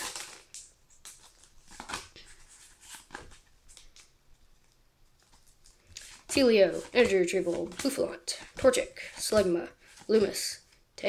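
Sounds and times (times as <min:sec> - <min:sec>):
foil pack crinkling: 0:00.0 - 0:04.1.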